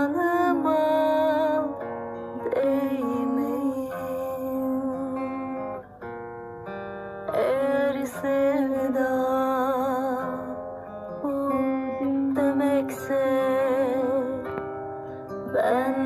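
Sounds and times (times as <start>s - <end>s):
person singing wavering held notes: 0.0s - 5.8s
plucked acoustic guitar: 0.0s - 16.0s.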